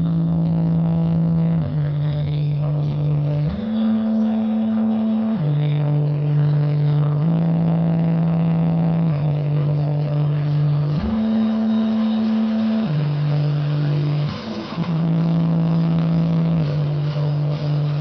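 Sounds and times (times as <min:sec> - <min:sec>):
low synth bass notes: 0:00.0 - 0:18.0.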